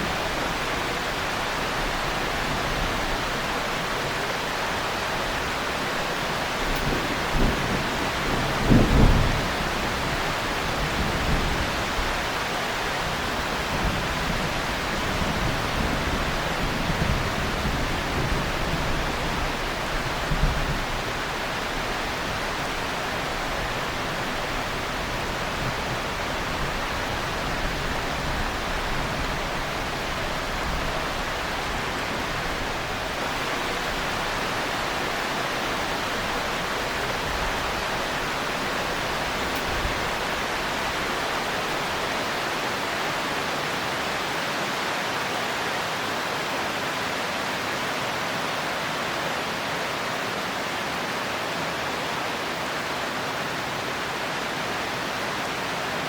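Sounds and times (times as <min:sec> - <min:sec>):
heavy rain: 0:00.0 - 0:56.0
thunder rumbling: 0:06.0 - 0:12.3, 0:13.1 - 0:42.1.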